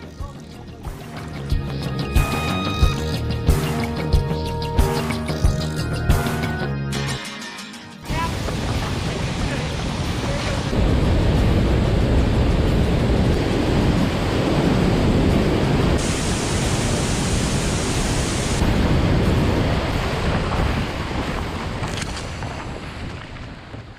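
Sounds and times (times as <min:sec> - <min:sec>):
wind buffeting microphone: 0:08.1 - 0:23.9.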